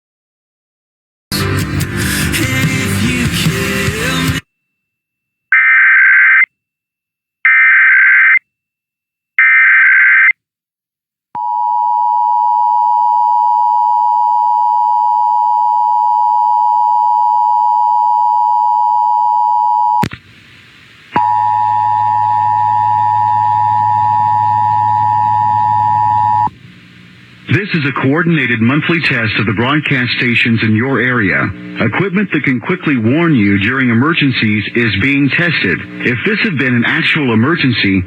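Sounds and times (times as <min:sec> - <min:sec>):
two-tone attention signal: 0:21.2 - 0:26.5
low hum: 0:21.2 - 0:27.6.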